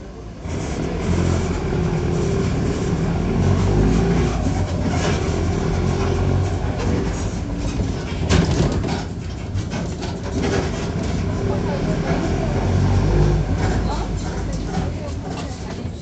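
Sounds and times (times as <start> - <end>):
diesel bus engine droning: 0.0 - 16.0.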